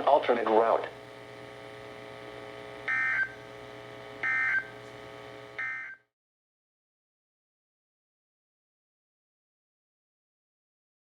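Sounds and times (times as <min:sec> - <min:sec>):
steady radio hum: 0:00.0 - 0:05.9
digital data tone bursts: 0:02.9 - 0:03.4, 0:04.2 - 0:04.8, 0:05.6 - 0:06.0.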